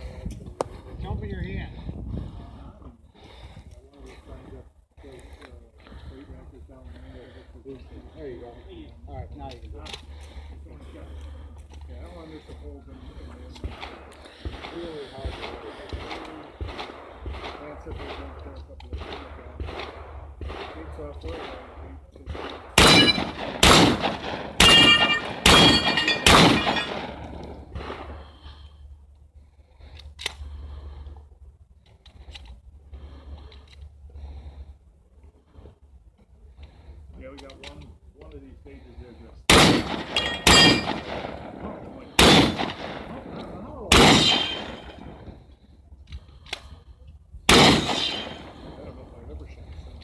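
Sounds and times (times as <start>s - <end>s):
shotgun shots: 13.7s - 28.2s, 39.5s - 45.3s, 47.5s - 49.0s.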